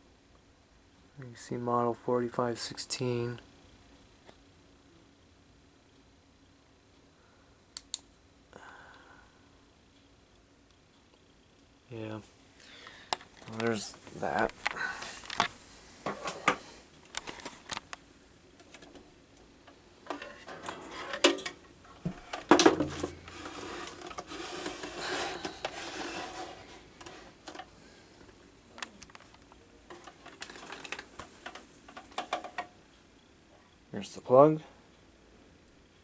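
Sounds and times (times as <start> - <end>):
clicks and knocks of fan handling: 18.6 - 27.8, 28.8 - 32.8
rubbing and rustling: 20.0 - 27.8, 28.8 - 32.6.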